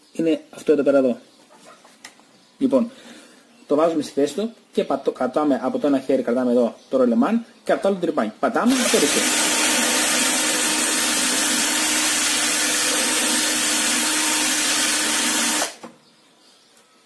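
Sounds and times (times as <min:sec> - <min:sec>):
electric drill sharpening chain: 0:08.7 - 0:15.8.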